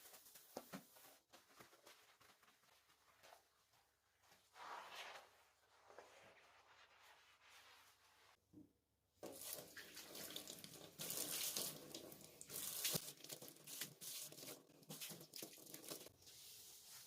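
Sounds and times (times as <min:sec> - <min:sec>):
tap water running into sink: 0:09.2 - 0:14.0.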